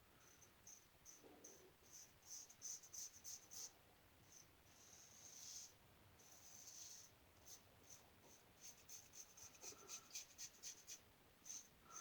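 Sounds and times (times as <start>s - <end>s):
light hiss: 0.0s - 12.0s
faint scratching strokes: 0.2s - 12.0s.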